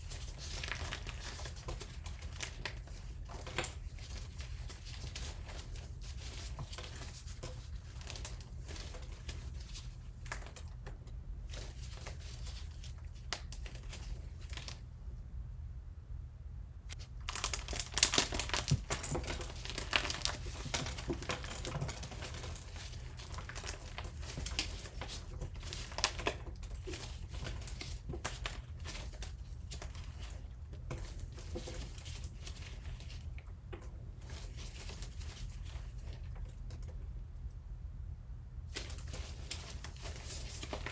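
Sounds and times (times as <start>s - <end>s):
material crinkling and crackling: 0.0s - 14.8s, 16.9s - 36.9s, 38.7s - 40.9s.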